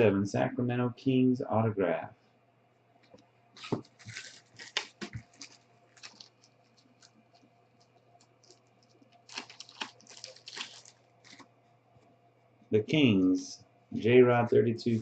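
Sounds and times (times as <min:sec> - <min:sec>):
faint steady hum: 0:00.0 - 0:15.0
trading cards rustling: 0:03.6 - 0:11.5.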